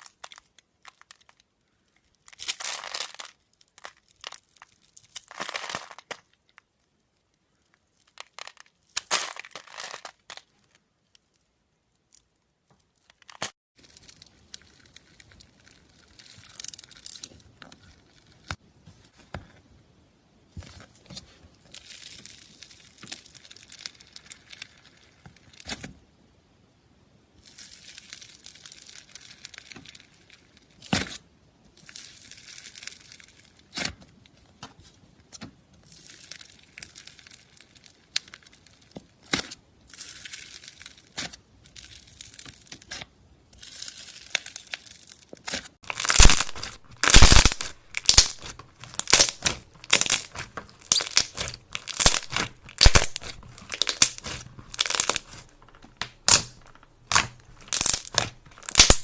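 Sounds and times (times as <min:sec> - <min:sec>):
material crackling and tearing: 0:00.0 - 0:06.6, 0:07.5 - 0:18.6, 0:35.8 - 0:59.0
loud crunching strokes: 0:45.8 - 0:59.0.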